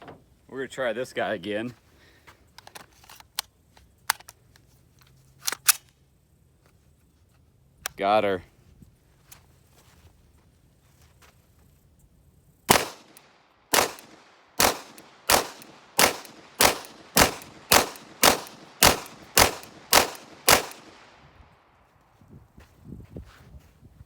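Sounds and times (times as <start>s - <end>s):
pistol shots: 12.7s - 21.2s.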